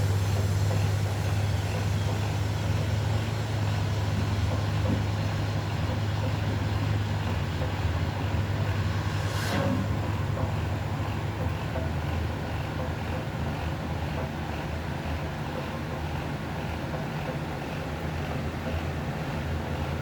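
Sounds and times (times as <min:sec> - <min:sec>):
low mechanical hum: 0:00.0 - 0:20.0
whoosh: 0:08.5 - 0:10.4.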